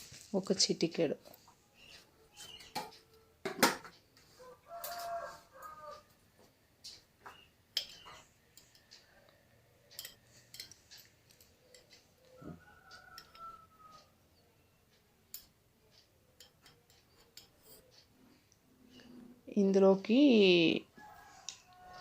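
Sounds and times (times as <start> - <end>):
spoon clinking against bowl: 7.7 - 8.9, 9.9 - 12.0, 13.1 - 13.6, 16.3 - 17.9.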